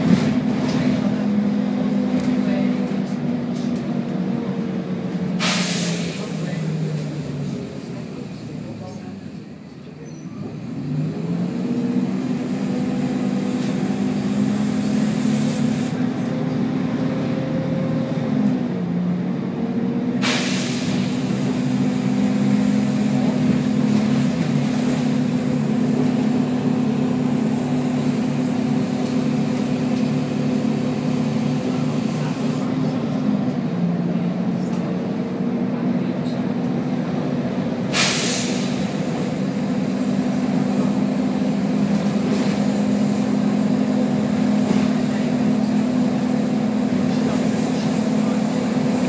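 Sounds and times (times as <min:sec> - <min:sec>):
bus engine pulling under load: 0:00.0 - 0:49.0
air release hiss: 0:05.4 - 0:06.3, 0:20.2 - 0:21.1, 0:37.9 - 0:38.8.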